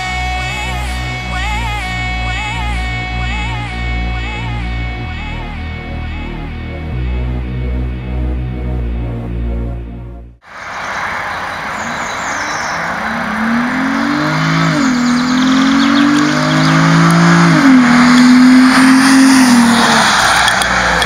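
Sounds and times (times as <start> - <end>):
car engine accelerating: 0.0 - 21.0
road and wind noise: 10.4 - 21.0.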